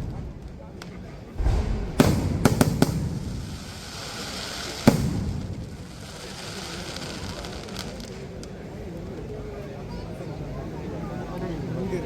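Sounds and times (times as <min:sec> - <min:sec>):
fireworks bangs: 0:00.0 - 0:08.7
fireworks crackling: 0:00.0 - 0:09.2.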